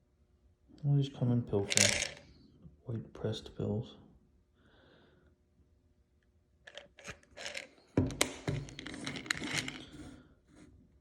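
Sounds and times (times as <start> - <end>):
tablets rattling in bottle: 1.6 - 2.2, 6.7 - 9.9.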